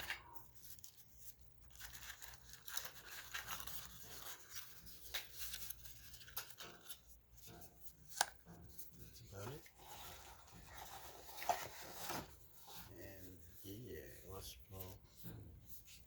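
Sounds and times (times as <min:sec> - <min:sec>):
packaging rustling: 0:00.0 - 0:07.2, 0:09.2 - 0:13.0.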